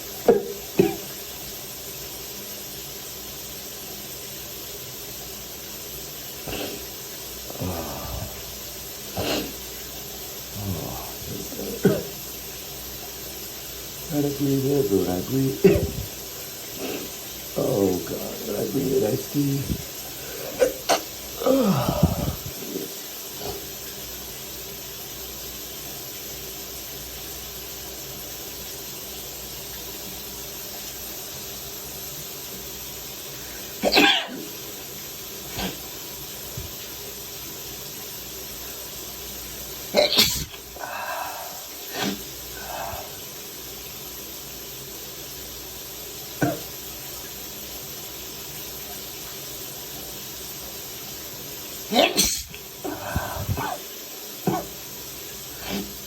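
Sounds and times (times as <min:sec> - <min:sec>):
steady hiss: 0:00.0 - 0:56.0
person coughing: 0:00.3 - 0:01.1, 0:11.6 - 0:12.1, 0:15.6 - 0:16.1, 0:20.5 - 0:22.6, 0:33.8 - 0:34.4, 0:40.0 - 0:40.6, 0:51.9 - 0:53.8, 0:54.5 - 0:54.7
person sneezing: 0:06.5 - 0:06.8, 0:09.2 - 0:09.6, 0:10.6 - 0:12.1, 0:20.4 - 0:23.6, 0:33.8 - 0:34.5, 0:40.0 - 0:43.2, 0:51.9 - 0:53.9, 0:54.5 - 0:54.7, 0:55.6 - 0:55.9.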